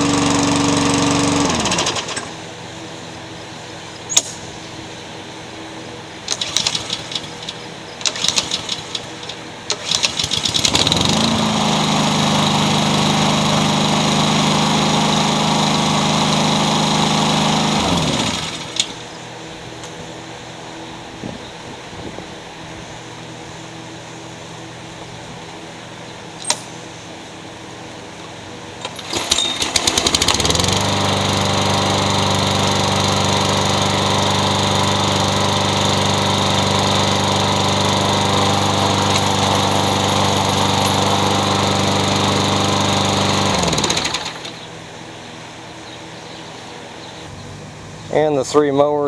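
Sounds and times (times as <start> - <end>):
pull-start cranking: 0.0 - 2.4, 6.3 - 19.0, 28.8 - 44.6
lawn mower engine running: 0.0 - 21.2, 27.4 - 49.0.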